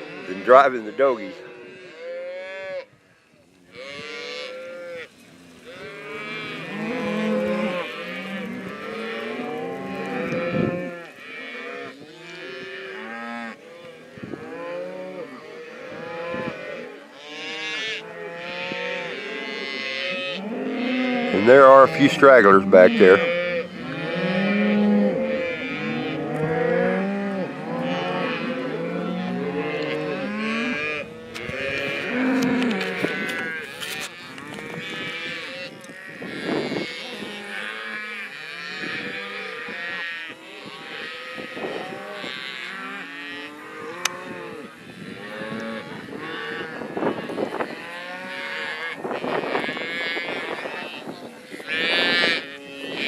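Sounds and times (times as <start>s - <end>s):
cattle mooing: 0.0s - 2.9s, 3.7s - 53.0s.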